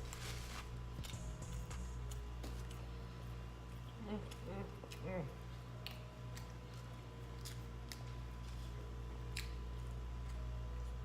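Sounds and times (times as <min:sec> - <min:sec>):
steady low hum: 0:00.0 - 0:11.0
chewing and mouth sounds: 0:03.6 - 0:11.0.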